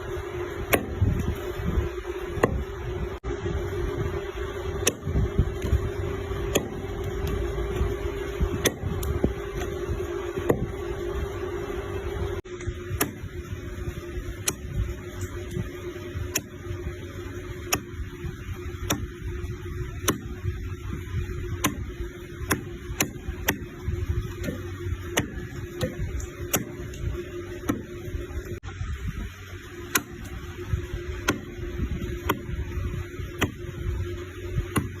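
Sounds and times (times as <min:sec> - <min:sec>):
steady low hum: 0:00.0 - 0:35.0
knife chopping meat: 0:31.2 - 0:31.5.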